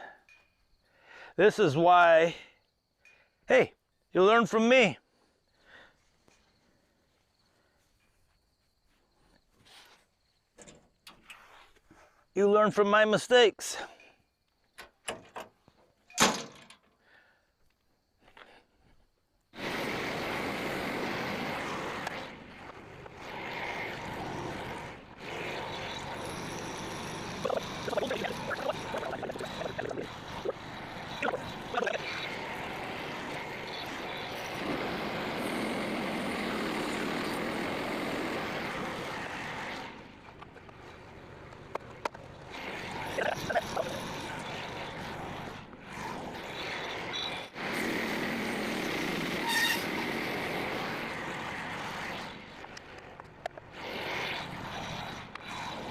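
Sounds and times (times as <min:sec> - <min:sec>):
bandsaw mill engine under load: 0:19.6 - 0:41.1, 0:42.0 - 0:55.9.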